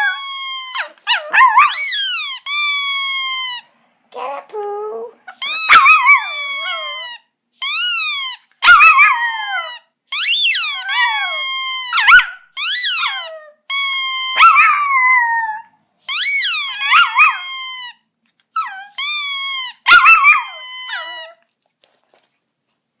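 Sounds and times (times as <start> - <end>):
squeaky toy squeaking: 0.0 - 3.7, 5.3 - 21.4
dog howling: 5.7 - 7.0, 8.7 - 9.7, 10.8 - 12.3.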